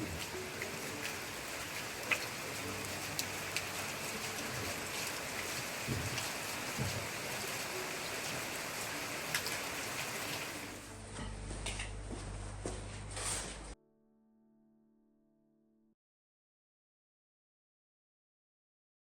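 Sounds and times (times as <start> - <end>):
rain hissing: 0.0 - 10.9.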